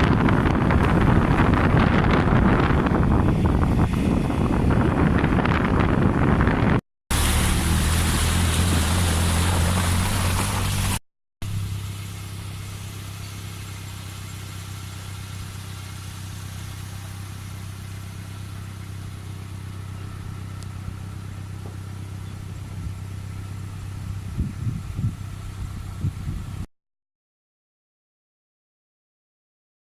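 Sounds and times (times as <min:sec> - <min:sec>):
wind rushing over microphone: 0:00.0 - 0:06.8, 0:23.9 - 0:26.7
car engine running: 0:00.0 - 0:26.6.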